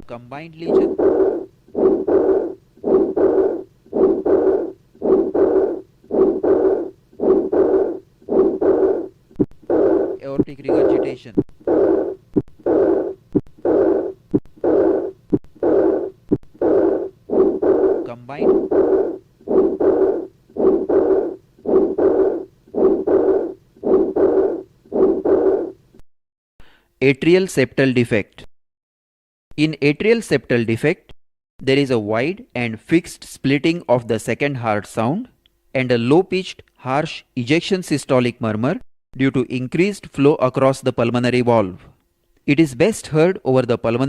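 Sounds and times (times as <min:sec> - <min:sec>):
heart murmurs through stethoscope: 0:00.6 - 0:25.8.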